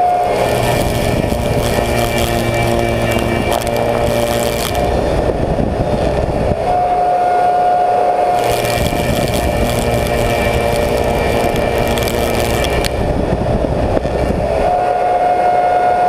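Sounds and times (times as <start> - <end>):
machine cutter head milling wood: 0.0 - 5.3, 8.3 - 13.2
steady machine whine: 0.0 - 16.0.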